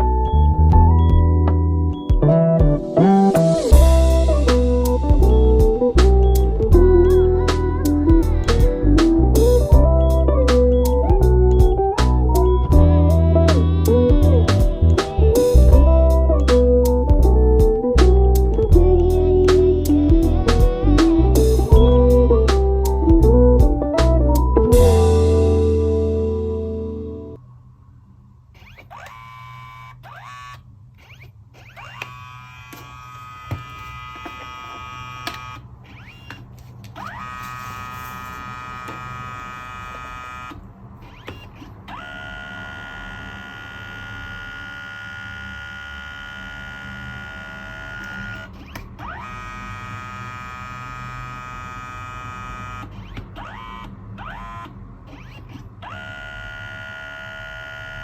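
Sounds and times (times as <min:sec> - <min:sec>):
printer mechanism whining: 0:28.6 - 0:58.0.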